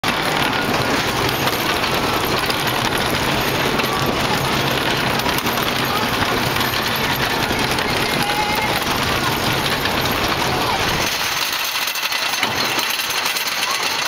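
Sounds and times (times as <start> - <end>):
roller coaster train rumbling: 0.0 - 14.0.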